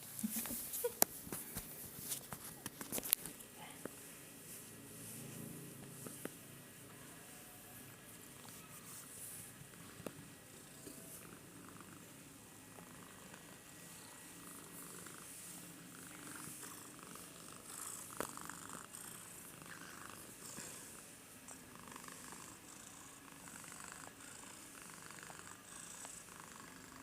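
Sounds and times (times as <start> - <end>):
cat purring: 9.2 - 27.0.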